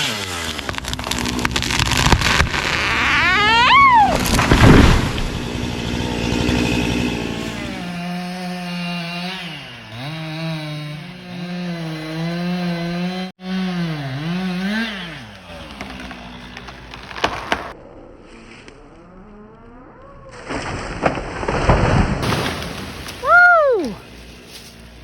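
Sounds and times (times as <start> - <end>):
chainsaw cutting tree: 0.0 - 17.8.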